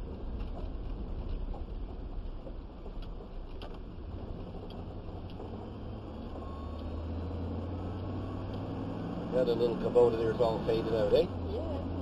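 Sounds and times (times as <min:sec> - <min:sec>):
truck engine and road rumble: 0:00.0 - 0:12.0.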